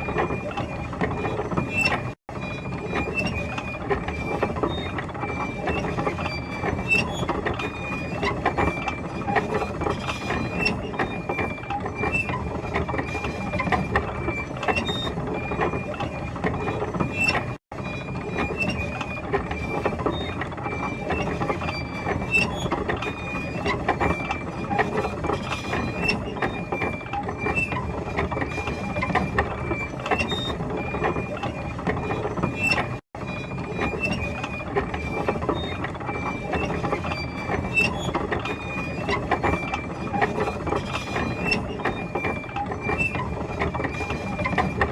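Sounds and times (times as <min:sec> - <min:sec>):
short high squeaks: 0:25.4 - 0:33.0.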